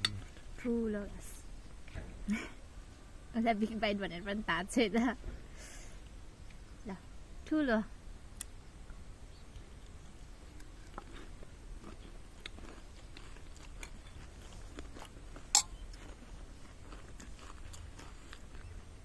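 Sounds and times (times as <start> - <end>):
wet mouth clicks: 8.4 - 8.6
person chewing crunchy food: 10.5 - 19.0.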